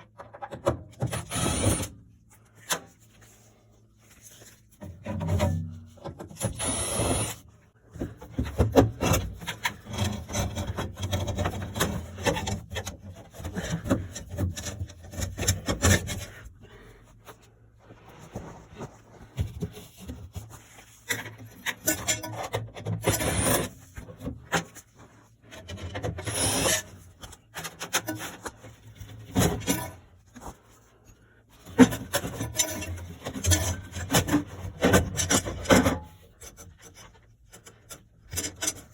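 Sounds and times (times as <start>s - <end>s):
scraping and rubbing: 9.2s - 22.2s.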